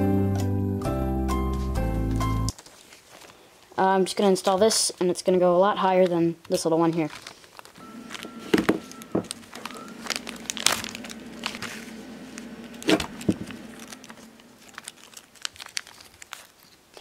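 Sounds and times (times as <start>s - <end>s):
faint steady hum: 3.0s - 17.0s
plastic clicks and crinkling: 6.0s - 11.7s, 12.4s - 17.0s.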